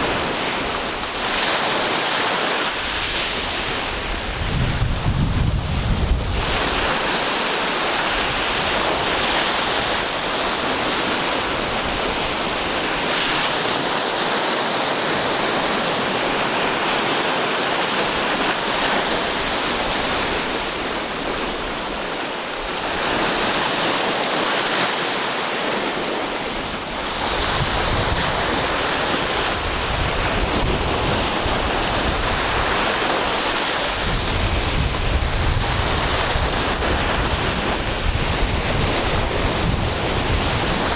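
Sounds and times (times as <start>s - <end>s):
ocean waves breaking: 0.0s - 40.9s
wind buffeting microphone: 2.7s - 14.1s, 25.8s - 40.9s.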